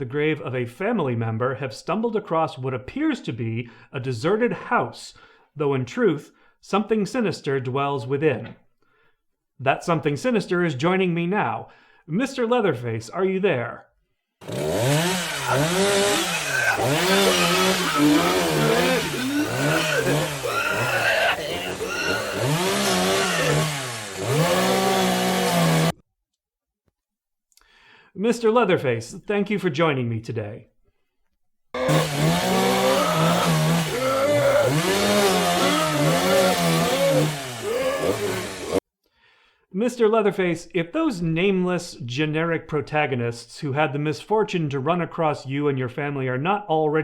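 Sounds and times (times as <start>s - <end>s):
chainsaw revving: 14.4s - 26.0s, 31.8s - 38.8s.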